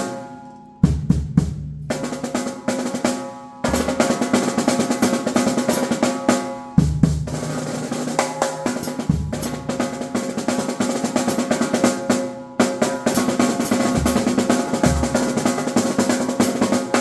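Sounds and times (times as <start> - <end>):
snare drum rolls: 3.7 - 6.0, 8.8 - 10.1, 10.9 - 12.1, 12.9 - 17.0
bass drum kicks: 13.8 - 15.7.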